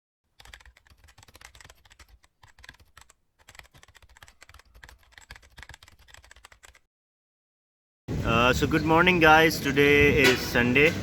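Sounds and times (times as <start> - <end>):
rapid irregular clicking: 0.4 - 6.8.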